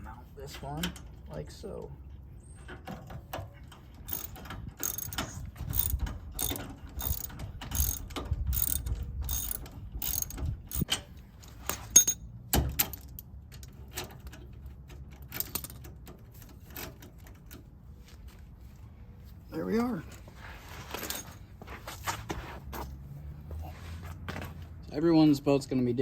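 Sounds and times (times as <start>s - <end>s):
ratchet wrench clicking: 4.0s - 10.9s.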